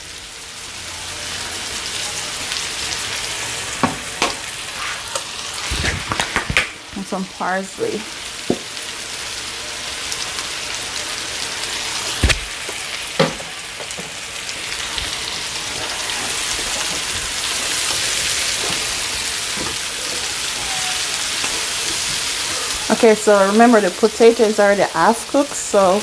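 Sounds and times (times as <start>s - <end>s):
vegetables sizzling in a frying pan: 0.0s - 26.0s.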